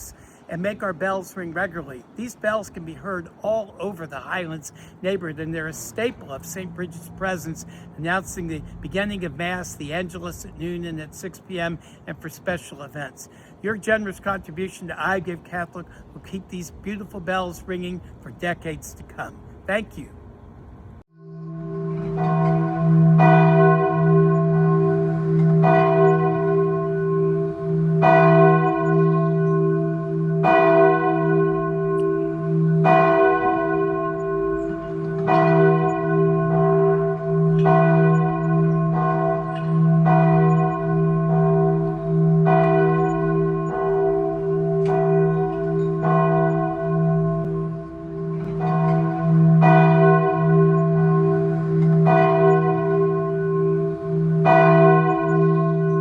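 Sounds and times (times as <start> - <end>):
church bell tolling: 21.2 - 56.0.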